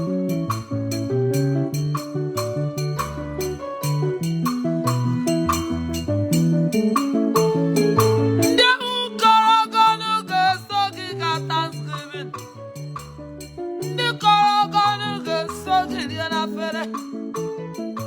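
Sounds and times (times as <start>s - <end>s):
bass line: 0.0s - 8.6s
light percussion: 0.0s - 18.0s
person singing: 8.6s - 12.4s, 14.0s - 17.0s.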